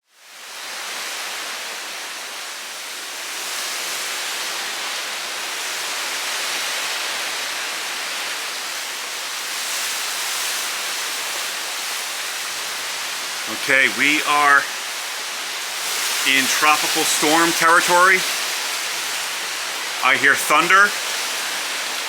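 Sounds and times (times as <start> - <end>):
wind: 0.1 - 22.0
rain hissing: 9.3 - 22.0.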